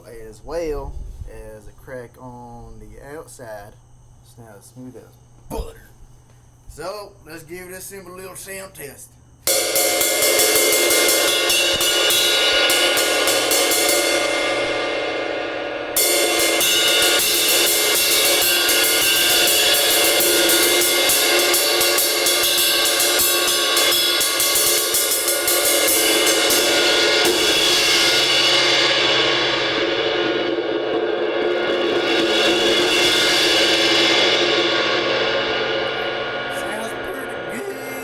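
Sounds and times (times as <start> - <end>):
ride cymbal strikes: 9.4 - 38.0.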